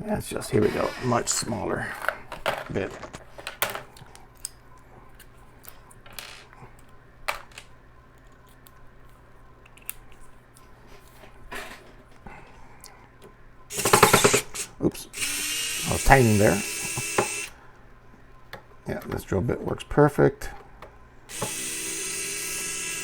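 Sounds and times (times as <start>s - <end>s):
cordless drill running: 13.7s - 17.5s, 21.3s - 23.0s.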